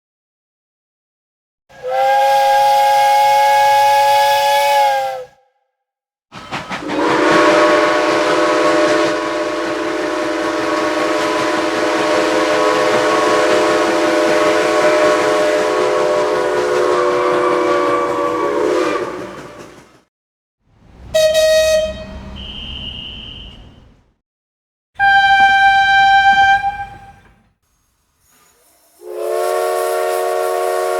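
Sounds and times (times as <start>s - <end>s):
train whistle chord: 1.7s - 5.4s, 6.9s - 19.7s, 21.1s - 23.7s, 25.0s - 27.2s, 28.9s - 30.9s
single-note whistle blast: 21.2s - 23.8s
hiss: 27.7s - 30.9s.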